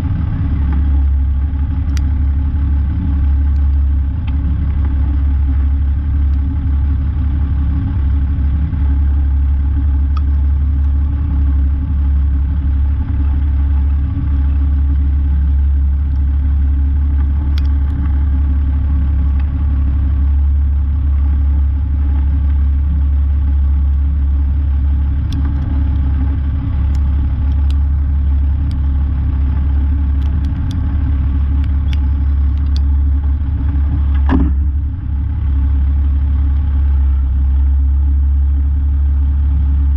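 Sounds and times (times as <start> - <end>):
diesel truck engine droning: 0.0 - 39.9
faint clicks: 31.5 - 32.9.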